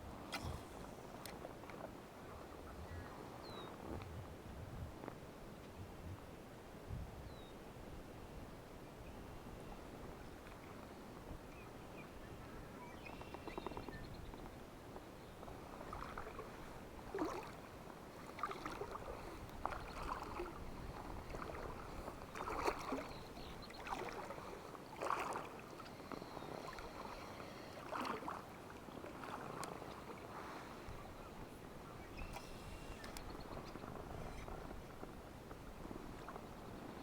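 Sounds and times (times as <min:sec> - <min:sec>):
water splashing in strokes: 0:18.3 - 0:25.9, 0:27.7 - 0:28.4.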